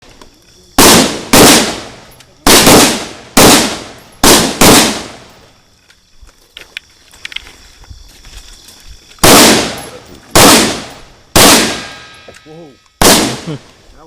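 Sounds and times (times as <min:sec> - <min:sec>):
rifle shots echoing: 0:00.8 - 0:05.4, 0:09.2 - 0:12.3, 0:13.0 - 0:13.5.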